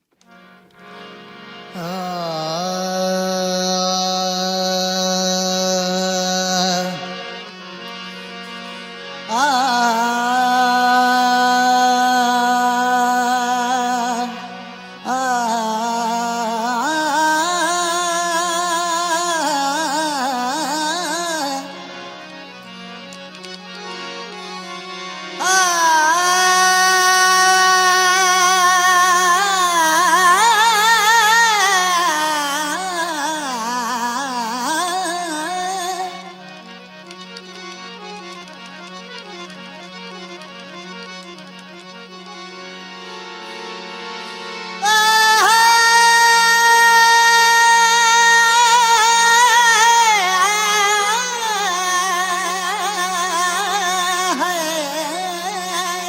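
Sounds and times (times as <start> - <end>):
man singing wordless ornaments: 1.7 - 7.5, 9.3 - 22.2, 25.4 - 36.6, 44.8 - 56.0.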